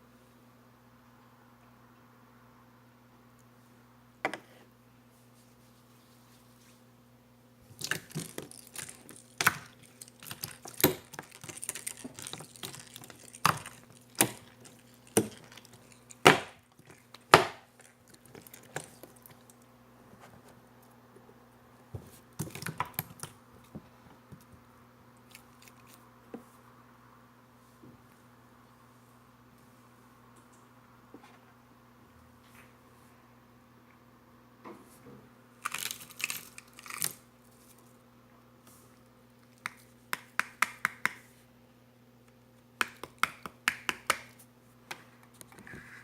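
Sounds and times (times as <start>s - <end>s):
slime squishing and popping: 7.8s - 19.2s.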